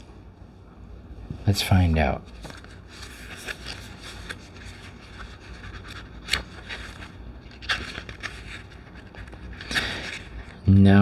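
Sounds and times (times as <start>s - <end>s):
cards sliding and rustling: 2.3s - 10.6s.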